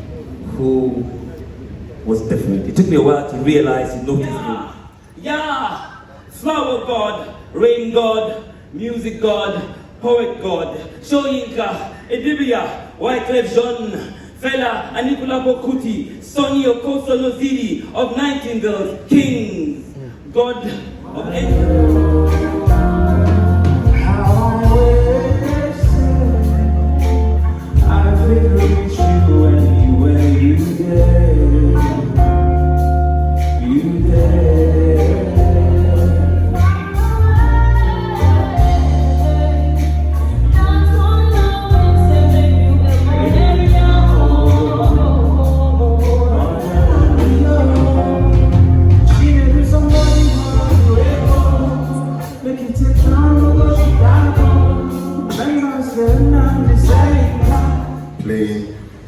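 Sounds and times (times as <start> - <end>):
song with heavy bass line: 21.4 - 55.4, 56.0 - 58.2.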